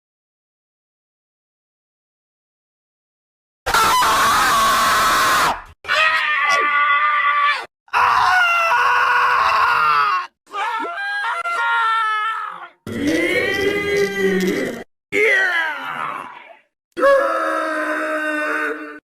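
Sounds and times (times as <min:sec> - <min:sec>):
cartoon character screaming: 0:03.7 - 0:14.4, 0:15.2 - 0:19.0.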